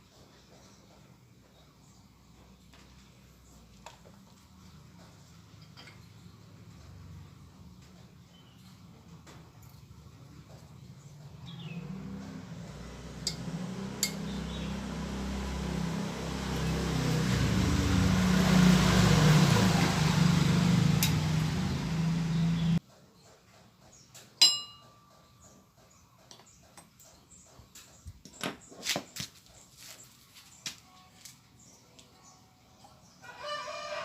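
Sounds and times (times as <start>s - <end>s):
sharp metallic clink: 24.4s - 25.4s.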